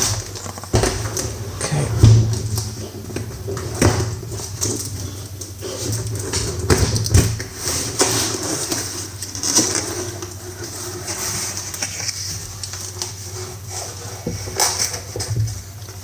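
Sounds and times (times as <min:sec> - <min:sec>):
cardboard packaging rustling: 0:00.0 - 0:16.0.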